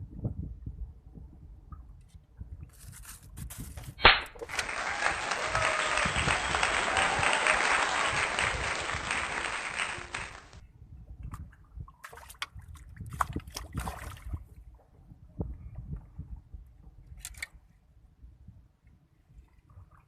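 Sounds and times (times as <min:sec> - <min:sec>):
sharp click: 0:04.0 - 0:04.5
applause: 0:04.4 - 0:10.6.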